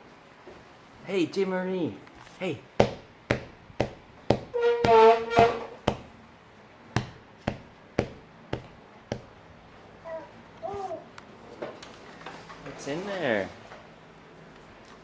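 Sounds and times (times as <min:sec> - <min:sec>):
toddler high-pitched vocal sound: 0:10.0 - 0:11.1.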